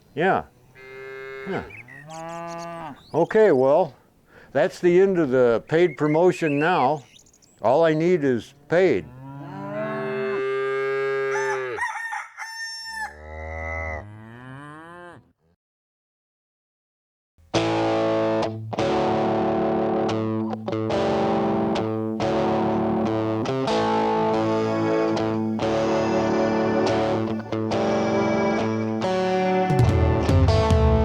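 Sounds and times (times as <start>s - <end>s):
farm animal calls: 0.2s - 4.0s, 4.6s - 15.3s, 23.7s - 29.7s
distorted electric guitar music: 17.5s - 31.0s.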